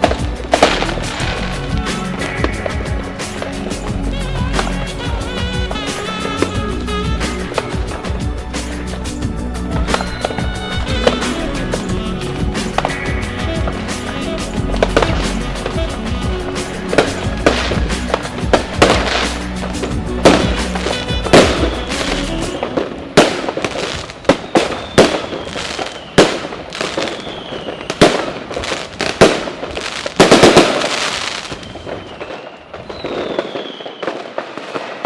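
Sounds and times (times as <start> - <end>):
fireworks bangs and crackles: 0.0 - 35.0
falling whistle: 9.5 - 28.1, 31.4 - 34.4.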